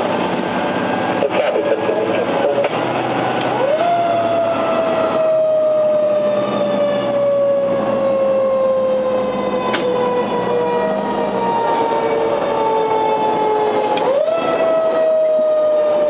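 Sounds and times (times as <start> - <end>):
mechanical siren winding down: 2.8 - 16.0.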